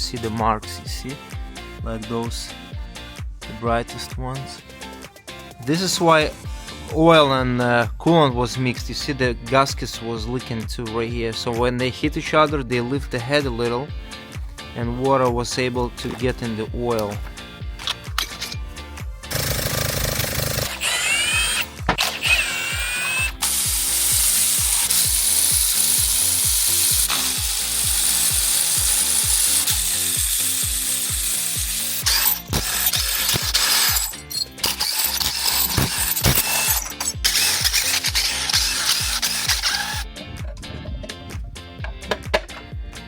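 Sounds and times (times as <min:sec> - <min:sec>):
background music: 0:00.0 - 0:43.0
power tool running: 0:19.3 - 0:40.1
ratchet clicking: 0:19.3 - 0:40.1.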